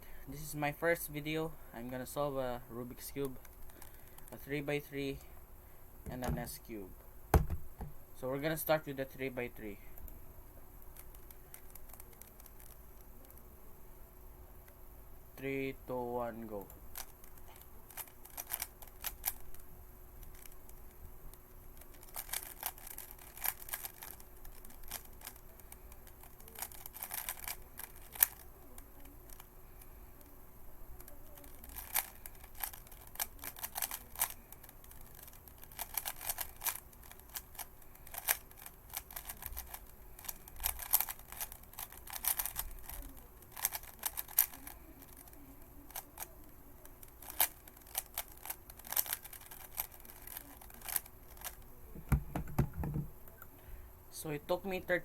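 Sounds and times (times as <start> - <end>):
plastic puzzle cube clicking: 16.6 - 19.6, 20.2 - 20.9, 21.7 - 29.5, 31.0 - 53.1.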